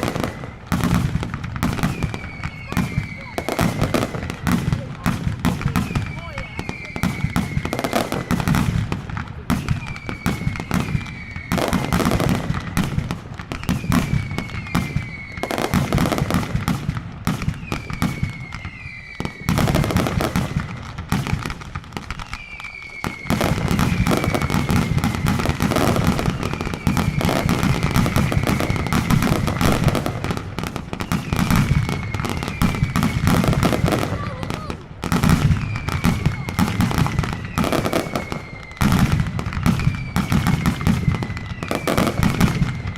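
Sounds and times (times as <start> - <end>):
firecrackers banging: 0.0 - 42.9
whistles falling in pitch: 1.8 - 4.6, 5.8 - 8.4, 9.5 - 12.3, 13.5 - 15.8, 17.6 - 20.8, 22.2 - 25.5, 26.2 - 29.8, 31.0 - 34.0, 35.5 - 39.1.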